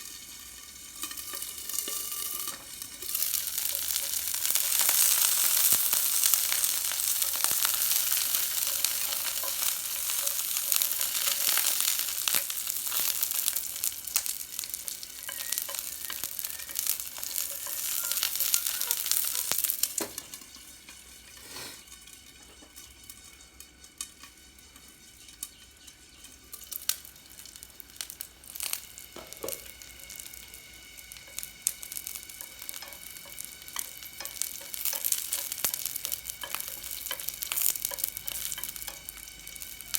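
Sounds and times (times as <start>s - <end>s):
food deep-frying in oil: 0.0s - 39.9s.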